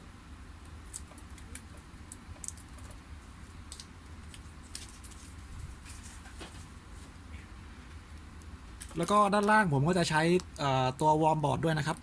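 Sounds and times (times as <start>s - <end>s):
low steady hum: 0.0s - 12.0s.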